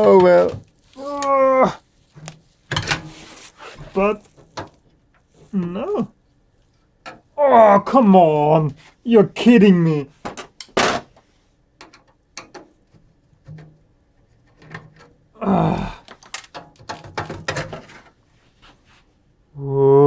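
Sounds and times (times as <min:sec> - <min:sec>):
tools and metal parts clicking: 0:16.0 - 0:18.1
metal clatter: 0:16.2 - 0:18.2.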